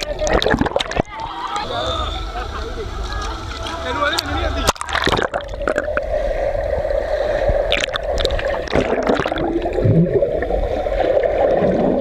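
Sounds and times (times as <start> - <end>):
water rushing and sloshing: 0.0 - 12.0
short water splashes: 3.0 - 6.0.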